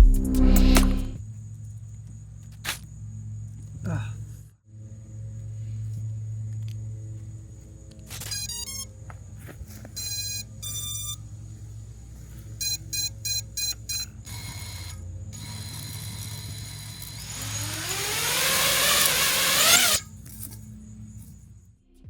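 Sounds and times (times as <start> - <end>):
drone motors whining: 0.0 - 1.2, 14.1 - 20.1.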